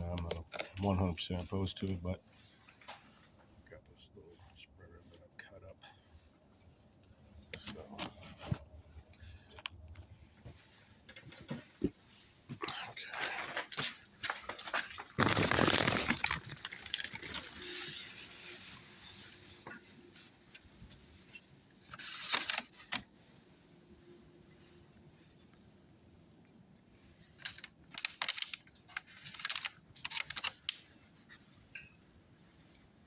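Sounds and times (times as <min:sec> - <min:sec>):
plastic spreader scraping filler: 0:15.2 - 0:19.0.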